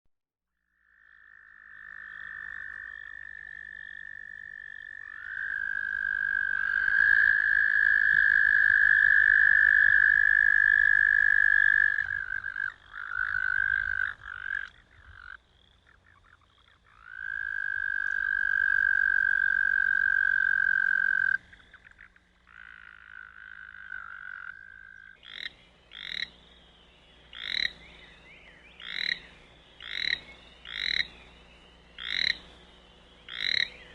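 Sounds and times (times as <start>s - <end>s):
toad croaks: 0.8s - 26.3s.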